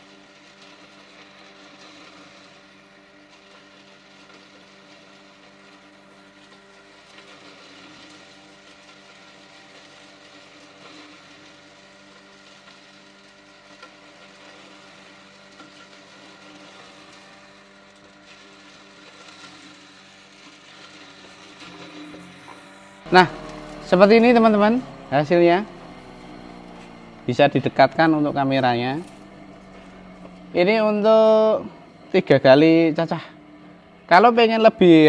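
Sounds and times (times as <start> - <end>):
chopper machine motor whirring: 12.0 - 35.0.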